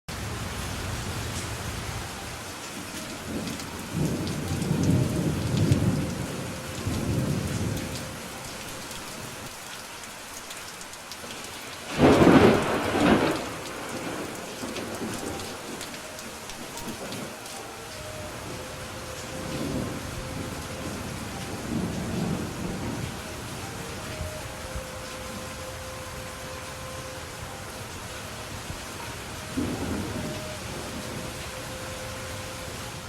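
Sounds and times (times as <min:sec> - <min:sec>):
steady rain: 0:00.1 - 0:33.0
low thunder rumble: 0:03.2 - 0:08.5, 0:11.9 - 0:17.4, 0:19.2 - 0:25.4, 0:29.6 - 0:31.5
loud thunderclap: 0:11.9 - 0:15.8.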